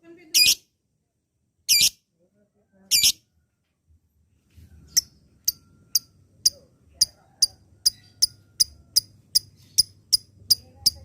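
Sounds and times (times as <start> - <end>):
bird chirping high and sharp: 1.7 - 2.0, 2.9 - 3.2.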